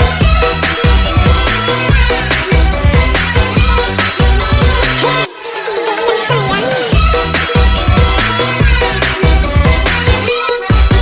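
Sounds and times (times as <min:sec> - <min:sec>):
electronic dance music: 0:01.2 - 0:10.1.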